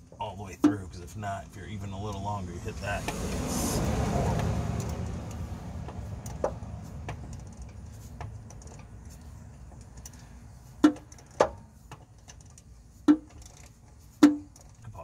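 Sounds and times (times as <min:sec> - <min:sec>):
sharp metallic knocks: 0:10.8 - 0:12.0, 0:14.2 - 0:14.7.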